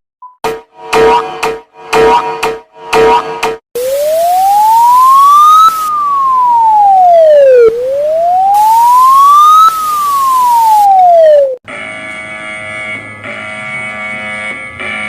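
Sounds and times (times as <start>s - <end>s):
emergency siren wailing: 3.8s - 15.0s.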